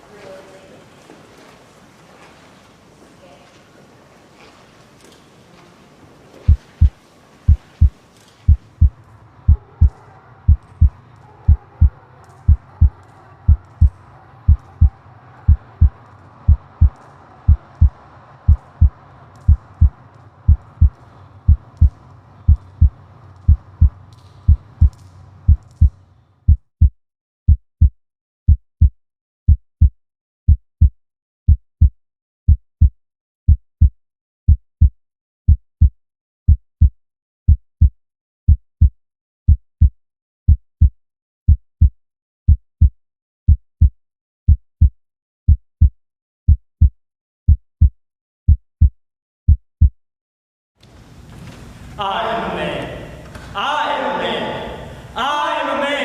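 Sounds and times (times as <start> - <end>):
faint hum: 0.0 - 26.4, 50.8 - 55.8
heartbeat thumps: 6.4 - 26.9, 43.5 - 43.9, 44.5 - 44.9, 45.5 - 45.9, 46.5 - 46.9, 47.5 - 48.9, 49.5 - 50.0.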